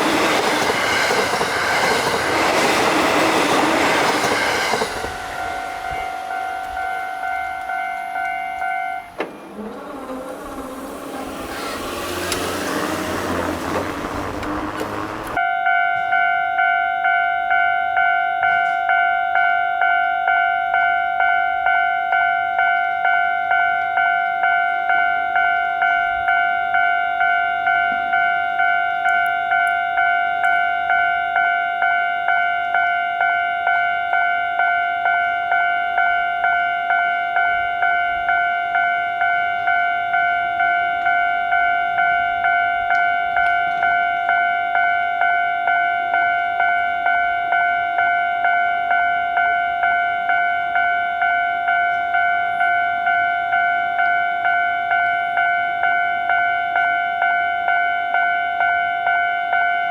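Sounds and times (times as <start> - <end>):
train passing with rushing rumble: 0.0 - 15.5
level crossing warning bell: 0.0 - 59.9.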